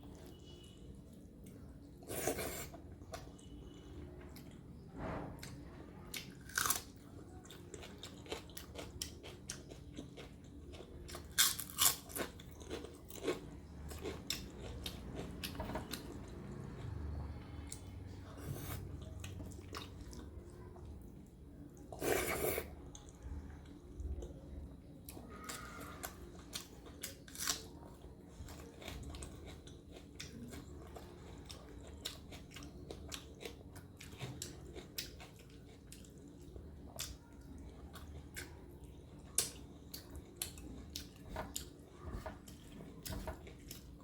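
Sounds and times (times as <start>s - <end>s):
wet chewing: 7.4s - 15.6s
crisp crunches of fried food: 11.2s - 13.4s.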